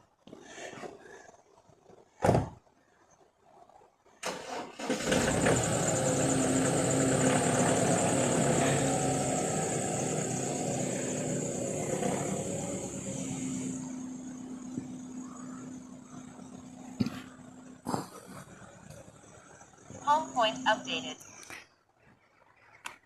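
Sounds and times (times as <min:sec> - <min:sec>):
drone motors whining: 0:05.1 - 0:17.8.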